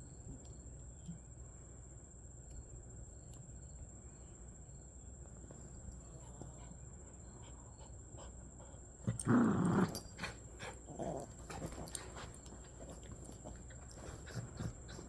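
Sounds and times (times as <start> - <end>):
dogs scuffling: 9.8 - 15.0.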